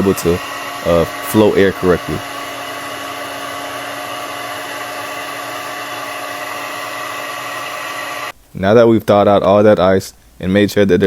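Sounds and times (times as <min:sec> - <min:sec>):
hair dryer running: 0:00.0 - 0:08.4.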